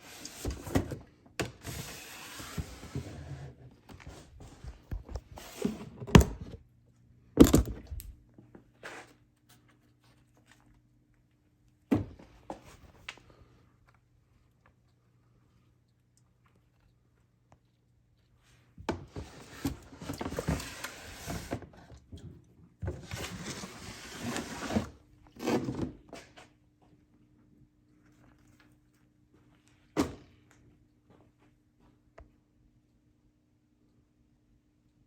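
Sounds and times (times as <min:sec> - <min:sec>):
faint low hum: 0:03.2 - 0:19.3
plastic tubs knocking and scraping: 0:18.9 - 0:21.9.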